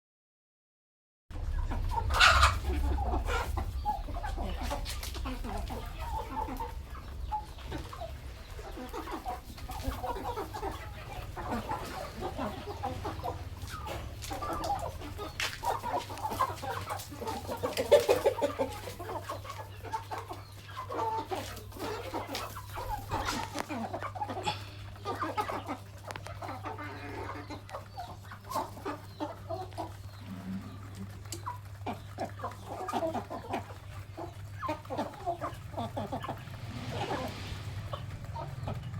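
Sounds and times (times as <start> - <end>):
steady low hum: 1.3 - 16.3
chickens clucking: 1.4 - 38.9.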